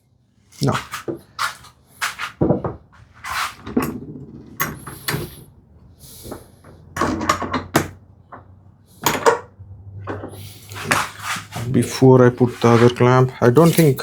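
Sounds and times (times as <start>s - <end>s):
wooden knocks and clunks: 2.4s - 3.0s
short scrape: 3.2s - 3.6s, 10.4s - 11.8s.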